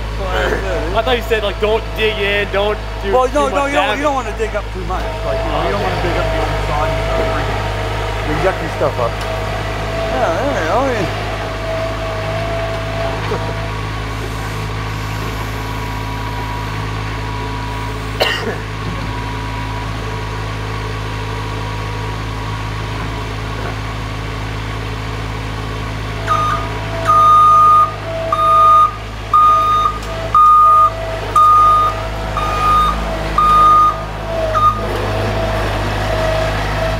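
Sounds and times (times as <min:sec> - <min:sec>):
loader engine running: 0:00.0 - 0:36.9
reversing alarm beeping: 0:15.0 - 0:18.2, 0:26.2 - 0:35.4.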